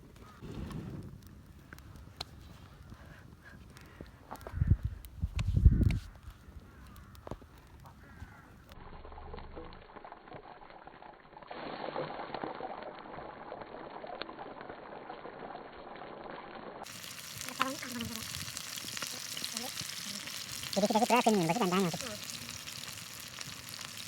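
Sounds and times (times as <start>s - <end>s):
meat frying and sizzling: 9.8s - 24.0s
person speaking loudly: 19.1s - 22.6s.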